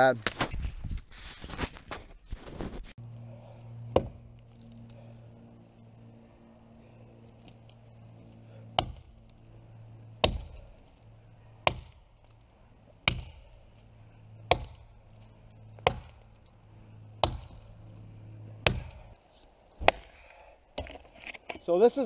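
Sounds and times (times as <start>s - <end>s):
steady low hum: 3.0s - 21.2s
axe chopping into wood: 3.9s - 4.2s, 8.8s - 9.1s, 10.2s - 10.6s, 11.6s - 12.0s, 13.0s - 13.5s, 14.4s - 14.9s, 15.8s - 16.2s, 17.2s - 17.7s, 18.6s - 19.1s, 19.8s - 20.2s.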